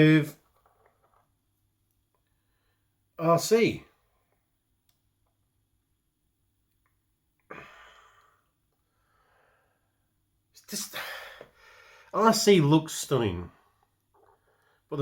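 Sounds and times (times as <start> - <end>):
person breathing out: 7.5 - 10.0.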